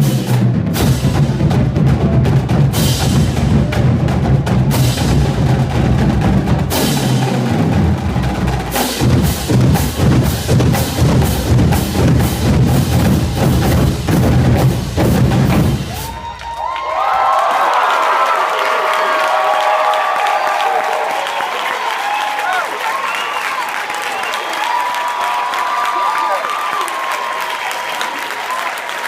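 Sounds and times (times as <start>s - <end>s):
marching drumline playing: 0.0s - 16.4s.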